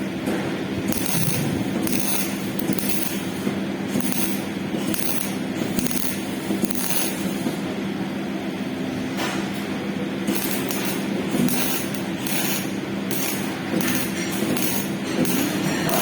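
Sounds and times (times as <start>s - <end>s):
welding machine hum: 0.0s - 16.0s
welding arc crackling: 0.7s - 7.6s, 10.2s - 16.0s.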